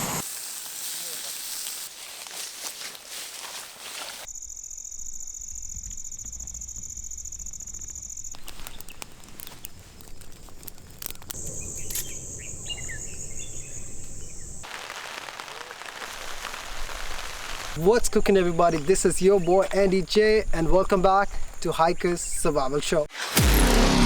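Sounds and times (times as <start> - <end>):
even hiss: 0.0 - 2.8, 11.2 - 23.0
insects buzzing: 0.0 - 23.1
pulsing insect buzz: 4.3 - 10.4, 11.2 - 14.7
bird chirps: 11.1 - 14.6.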